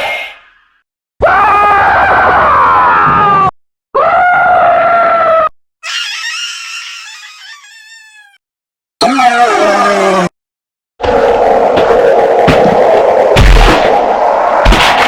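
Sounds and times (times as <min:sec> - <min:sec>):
high wavering cry: 0:05.8 - 0:08.4.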